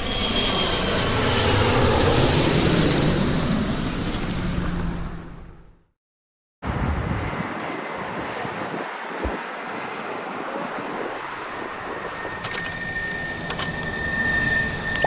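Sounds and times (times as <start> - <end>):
jet engines rushing: 6.6 - 15.0
high ringing tone: 11.8 - 15.0.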